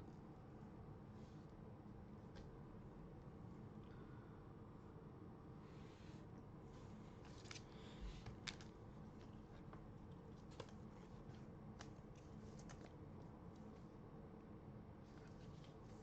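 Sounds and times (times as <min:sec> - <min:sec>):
low room hum: 0:00.0 - 0:16.0
trading cards rustling and clicking: 0:07.2 - 0:13.8.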